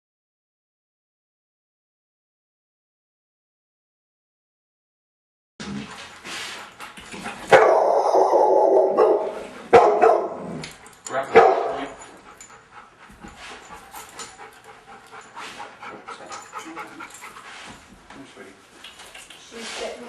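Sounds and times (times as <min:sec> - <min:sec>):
dog barking: 0:07.5 - 0:10.6, 0:11.2 - 0:12.0.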